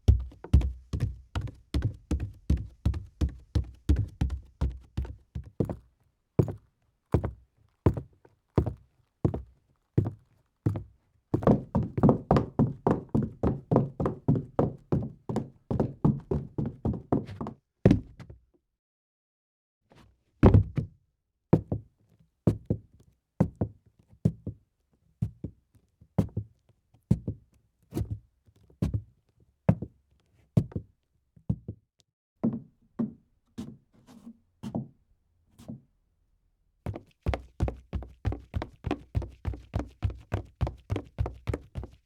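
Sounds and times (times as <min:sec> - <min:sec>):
footsteps on wooden stairs: 0:36.9 - 0:42.0
sandals running on wood: 0:36.9 - 0:42.0.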